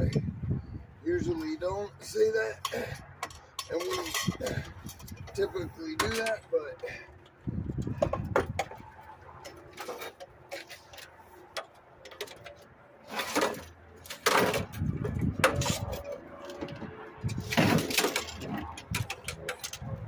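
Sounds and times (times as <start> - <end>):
metal clatter: 2.6 - 6.5, 7.7 - 20.0
metal clanks from hand tools: 2.6 - 7.0.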